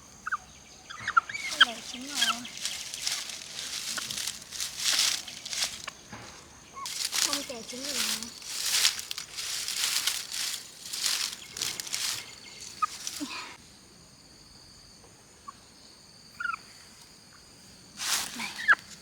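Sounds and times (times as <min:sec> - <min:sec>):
chicken calls: 0:00.0 - 0:13.6
rustling: 0:01.3 - 0:13.6, 0:18.0 - 0:19.0.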